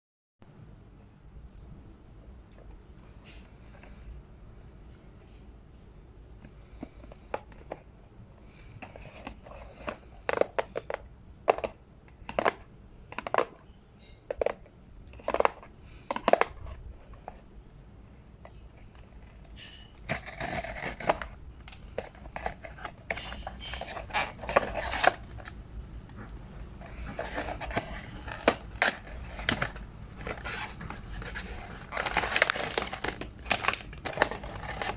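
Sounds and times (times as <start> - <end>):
crinkly rustle: 18.6 - 34.9
packaging crinkling: 18.9 - 25.6, 26.6 - 34.9.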